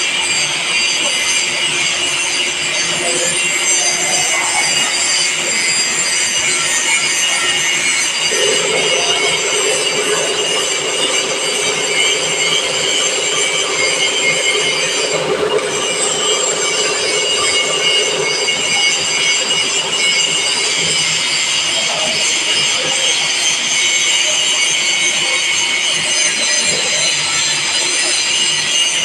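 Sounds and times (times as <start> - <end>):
high whining tones: 0.0 - 29.0
milling machine grinding: 0.0 - 29.0.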